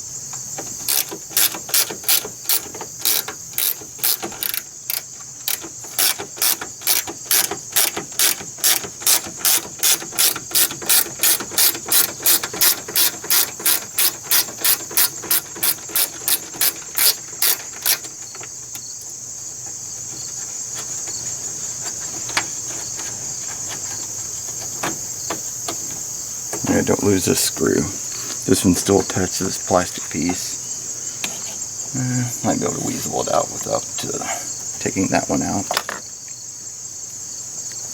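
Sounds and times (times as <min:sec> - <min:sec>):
crickets chirring: 0:00.0 - 0:37.9
ratchet wrench clicking: 0:00.6 - 0:18.2.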